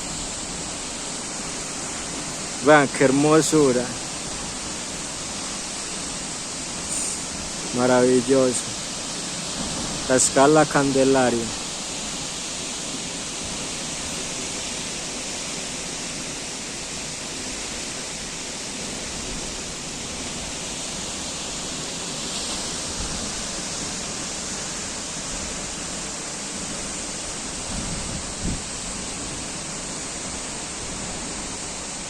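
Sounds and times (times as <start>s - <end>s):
waterfall rushing: 0.0s - 32.0s.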